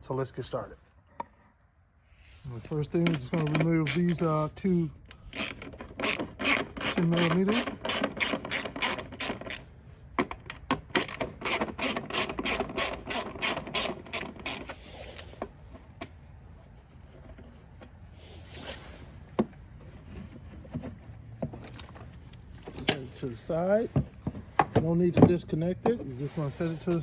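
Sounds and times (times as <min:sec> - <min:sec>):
socket ratchet clicking: 0:05.1 - 0:09.6.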